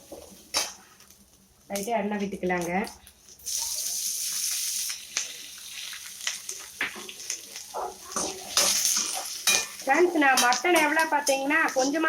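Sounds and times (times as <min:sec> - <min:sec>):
oil sizzling in a hot pan: 0:03.1 - 0:12.0
spoon scraping a pan: 0:07.7 - 0:12.0.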